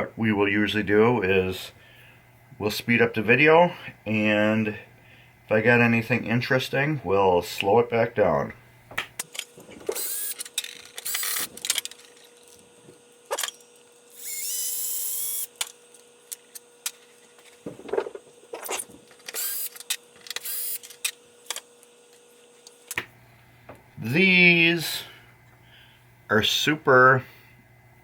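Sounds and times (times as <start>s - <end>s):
screws and parts clicking: 9.2s - 12.6s, 13.3s - 17.0s, 18.6s - 21.7s
power screwdriver whirring: 9.8s - 12.6s, 13.4s - 16.6s, 18.7s - 21.6s.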